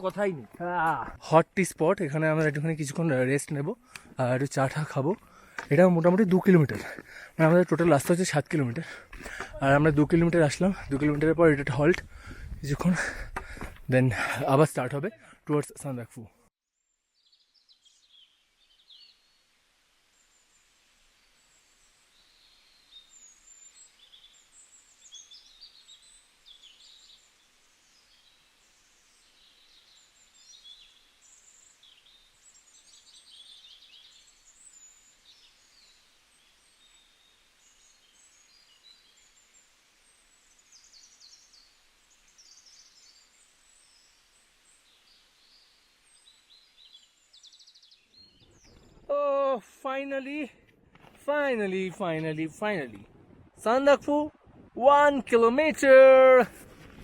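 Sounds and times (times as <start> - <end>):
small birds chirping: 0.0 - 15.8, 17.1 - 19.5, 20.3 - 53.0
low background hiss: 18.0 - 48.0.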